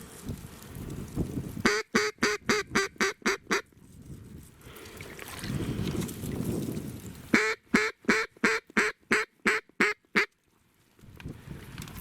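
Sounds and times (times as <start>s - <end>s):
duck quacking: 1.6s - 3.6s, 7.3s - 10.3s.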